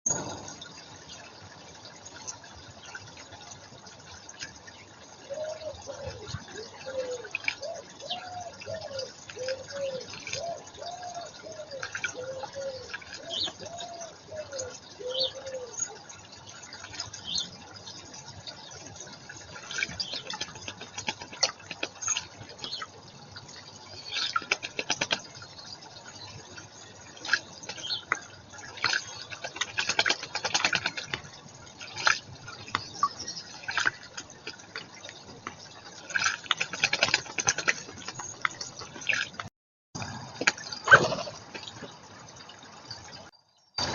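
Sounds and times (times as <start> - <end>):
water splashing and dripping: 0.1 - 43.9
small birds chirping: 4.6 - 39.4.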